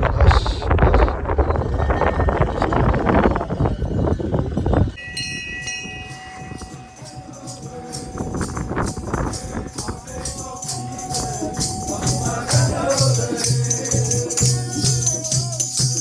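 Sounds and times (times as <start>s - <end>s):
hand percussion rattling beat: 2.7s - 16.0s
group of voices singing: 6.4s - 16.0s.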